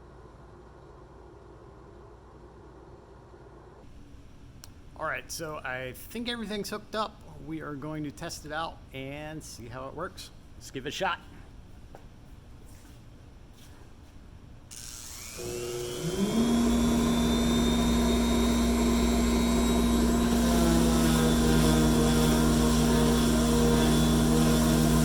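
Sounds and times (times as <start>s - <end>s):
dust collector blower hum: 14.7s - 25.0s
electric sander whine: 14.7s - 25.0s.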